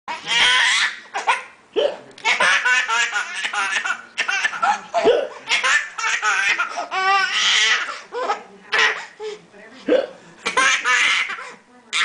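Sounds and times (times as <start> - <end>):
person hiccuping: 1.8 - 2.0, 5.0 - 5.4, 9.9 - 10.1.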